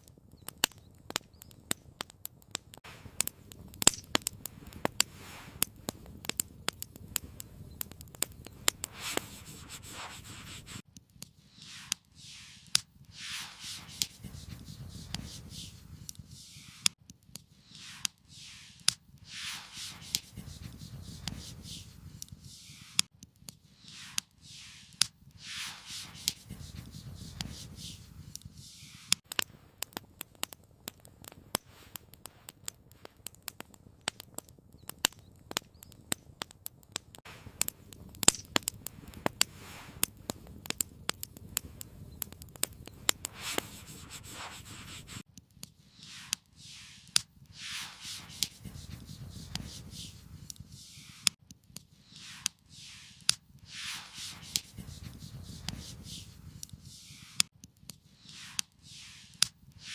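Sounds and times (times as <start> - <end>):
campfire crackling and popping: 0.0 - 59.9
scraping strokes: 4.7 - 5.7, 8.6 - 10.8, 11.4 - 29.2, 43.1 - 45.2, 45.9 - 57.5, 58.1 - 59.9.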